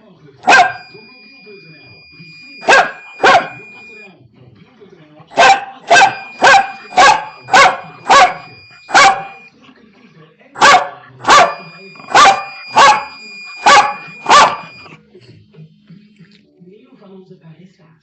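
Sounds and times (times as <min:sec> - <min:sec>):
dog barking: 0:00.4 - 0:00.9, 0:02.6 - 0:03.6, 0:05.3 - 0:09.4, 0:10.6 - 0:14.9
faint steady high tone: 0:00.4 - 0:04.2, 0:05.9 - 0:09.6, 0:11.2 - 0:15.0.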